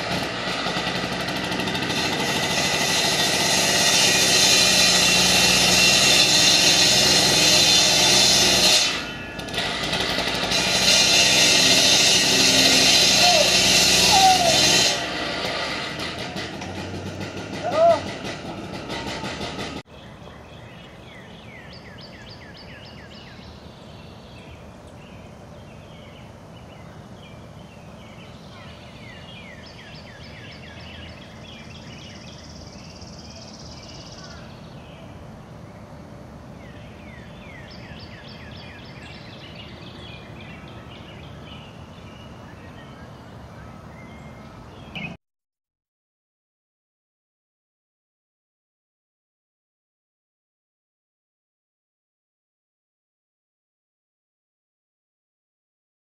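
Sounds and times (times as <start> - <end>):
steady background noise: 11.8 - 45.2.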